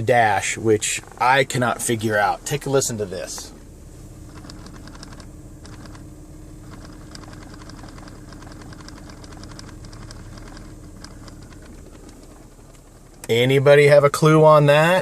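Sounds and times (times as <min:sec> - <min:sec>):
steady low hum: 0:00.0 - 0:15.0
gurgling crackle of small clicks: 0:06.6 - 0:13.3.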